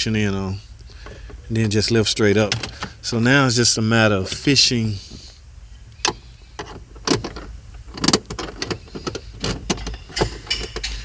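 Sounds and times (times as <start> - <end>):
gear-shifter cable clicks and knocks: 2.4 - 3.0, 5.9 - 11.0.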